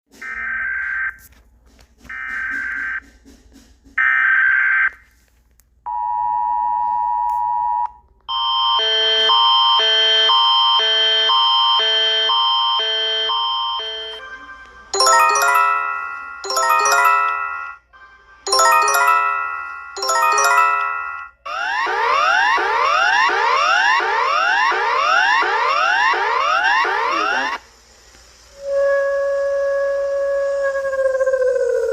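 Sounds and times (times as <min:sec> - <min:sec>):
descending alert chime: 0:15.0 - 0:17.8, 0:18.5 - 0:21.3
two-tone attention signal: 0:15.0 - 0:17.8, 0:18.5 - 0:21.3.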